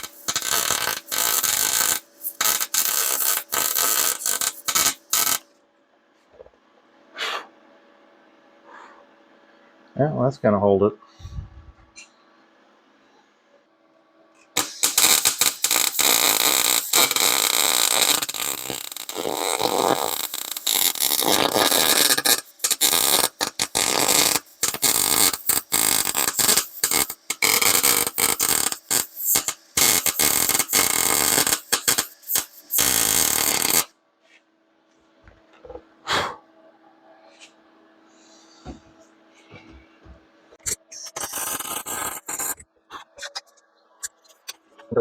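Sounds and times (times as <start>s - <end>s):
welder arc crackling: 0.0s - 5.5s, 14.6s - 33.9s, 40.6s - 43.4s.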